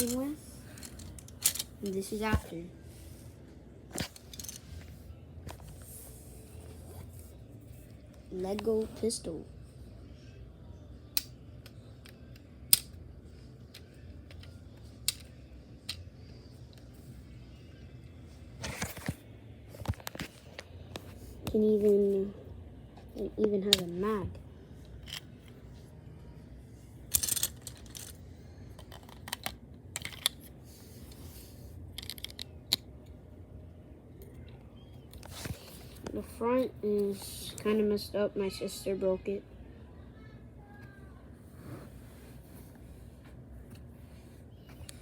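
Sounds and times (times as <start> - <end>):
plastic clicks and rattles: 32.0 - 32.8.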